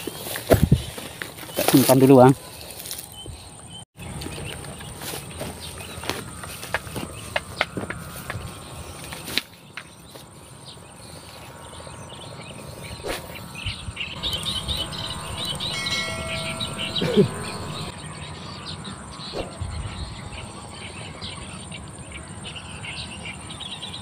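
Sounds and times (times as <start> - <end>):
birds chirping: 0.0 - 24.0
insects: 0.2 - 24.0
high insect-like whine: 6.0 - 24.0.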